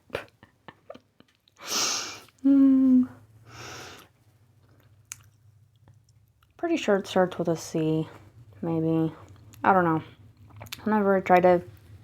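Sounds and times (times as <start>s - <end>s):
woman breathing: 1.6s - 4.2s
woman humming: 2.4s - 3.2s.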